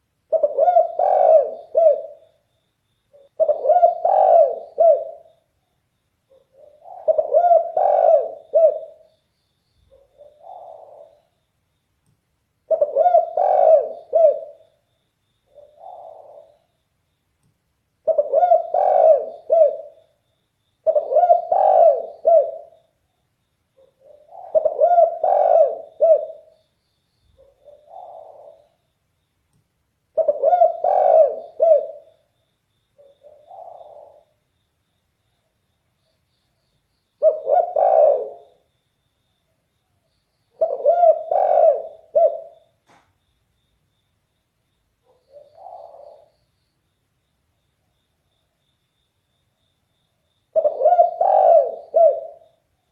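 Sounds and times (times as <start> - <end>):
dove cooing: 0.3 - 2.4, 3.1 - 5.4, 6.3 - 9.1, 9.9 - 11.3, 12.7 - 14.8, 15.5 - 16.7, 18.0 - 20.1, 20.8 - 22.9, 23.8 - 26.6, 27.4 - 28.8, 30.1 - 32.2, 33.0 - 34.4, 37.2 - 38.6, 40.6 - 42.7, 45.1 - 46.3, 50.5 - 52.6.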